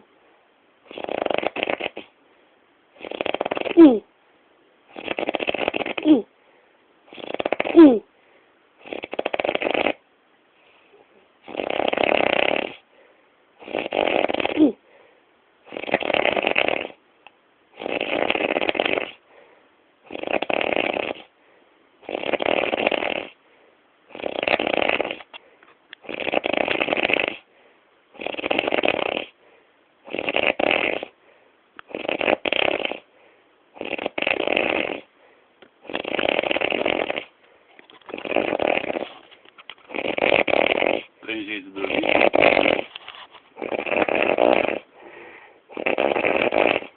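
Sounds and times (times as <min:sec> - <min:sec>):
loud snoring: 0:00.9 - 0:02.2, 0:03.0 - 0:04.0, 0:04.9 - 0:06.3, 0:07.1 - 0:08.1, 0:08.8 - 0:10.0, 0:11.4 - 0:12.9, 0:13.6 - 0:14.8, 0:15.6 - 0:17.0, 0:17.8 - 0:19.3, 0:20.0 - 0:21.3, 0:22.0 - 0:23.4, 0:24.1 - 0:27.5, 0:28.1 - 0:31.2, 0:31.8 - 0:35.2, 0:35.8 - 0:46.9.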